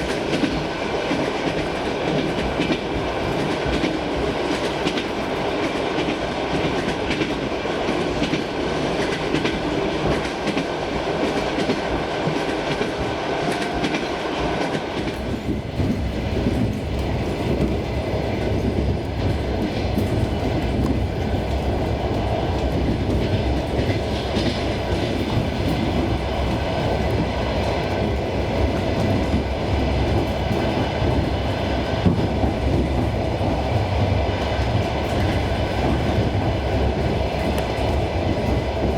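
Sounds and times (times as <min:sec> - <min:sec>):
deep train rumble: 0:00.0 - 0:38.9.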